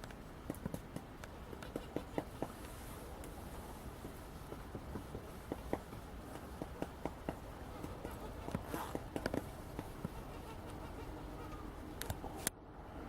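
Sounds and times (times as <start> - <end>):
woodpecker tapping on wood: 0.0 - 2.7, 4.0 - 10.8.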